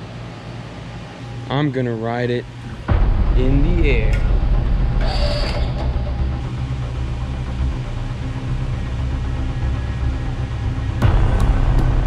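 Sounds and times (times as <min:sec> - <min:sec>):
crane hoist motor hum: 0:00.0 - 0:12.0.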